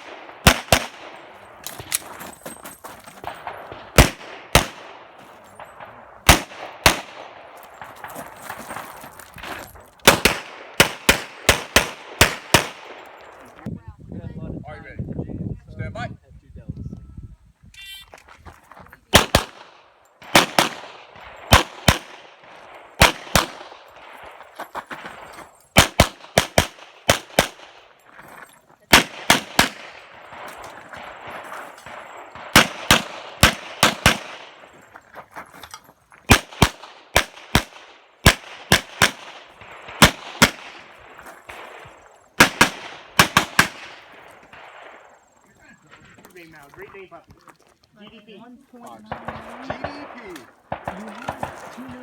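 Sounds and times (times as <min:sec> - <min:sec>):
handgun shots: 0:00.0 - 0:02.1, 0:03.2 - 0:04.9, 0:06.3 - 0:08.2, 0:10.0 - 0:13.2, 0:19.2 - 0:24.0, 0:25.0 - 0:27.8, 0:28.9 - 0:31.1, 0:31.8 - 0:34.6, 0:36.3 - 0:40.9, 0:41.5 - 0:44.7.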